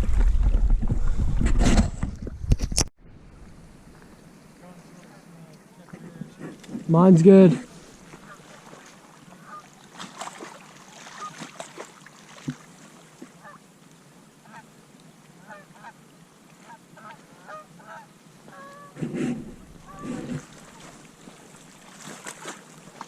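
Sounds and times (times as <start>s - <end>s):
low steady hiss: 3.0s - 23.0s
geese honking: 9.4s - 9.7s, 13.4s - 13.6s, 15.4s - 16.0s, 16.6s - 19.0s, 19.8s - 20.9s.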